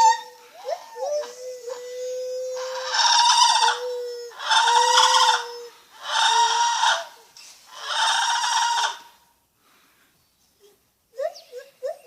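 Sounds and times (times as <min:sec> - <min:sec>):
gibbon calling: 0:00.0 - 0:07.2.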